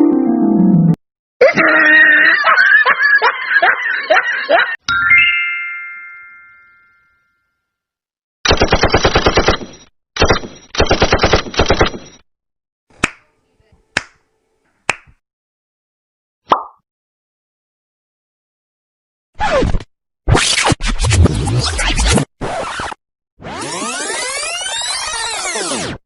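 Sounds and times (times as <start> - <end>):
automatic gunfire bursts: 8.5 - 11.9.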